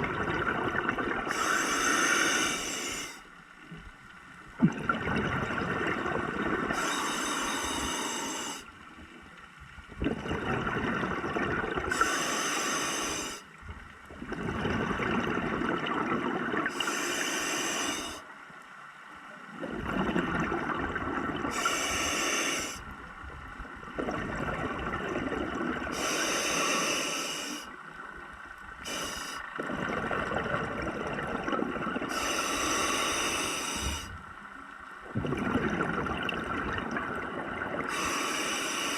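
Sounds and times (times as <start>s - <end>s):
bubbling: 0.0s - 3.2s, 4.6s - 8.6s, 9.9s - 13.4s, 14.1s - 18.2s, 19.5s - 22.8s, 23.8s - 27.5s, 28.8s - 34.1s, 35.1s - 38.9s
diver breathing through regulator: 1.3s - 3.2s, 6.7s - 8.7s, 11.9s - 13.5s, 16.7s - 18.3s, 21.5s - 22.9s, 25.9s - 27.8s, 28.8s - 29.5s, 32.1s - 34.2s, 37.9s - 38.9s.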